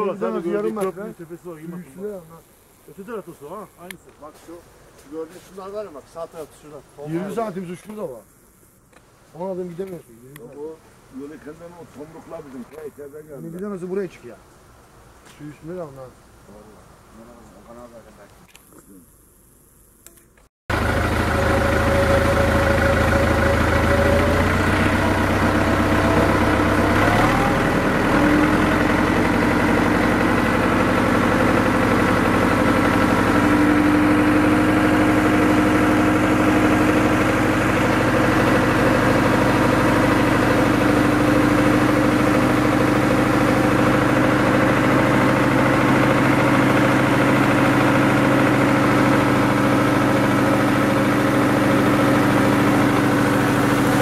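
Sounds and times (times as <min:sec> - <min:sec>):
engine idling: 0:20.7 - 0:54.0.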